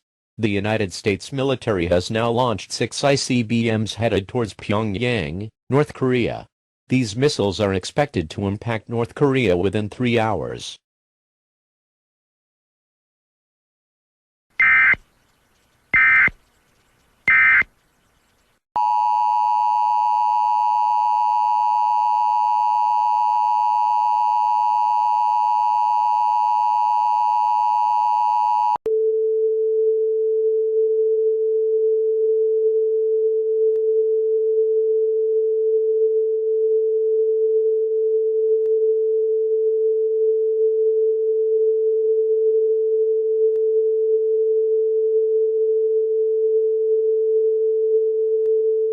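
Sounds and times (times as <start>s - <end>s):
screechy digital header tones: 14.6s - 15.0s, 16.0s - 16.3s, 17.3s - 17.7s.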